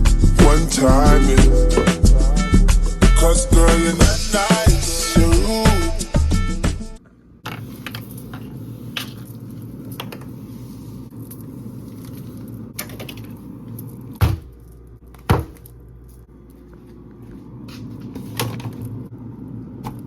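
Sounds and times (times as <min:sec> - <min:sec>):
loud thumps: 0:00.0 - 0:03.3.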